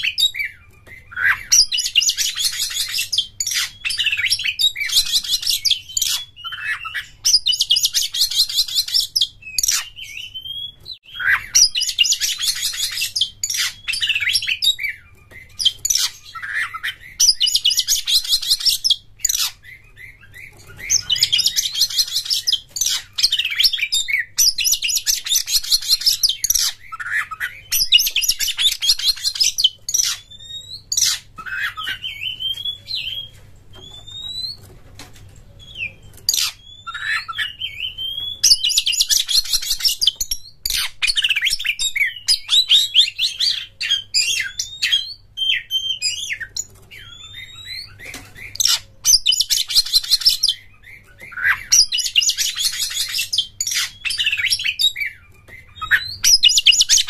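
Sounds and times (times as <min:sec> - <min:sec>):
bird chattering song: 0:00.0 - 0:34.7, 0:35.5 - 0:57.0.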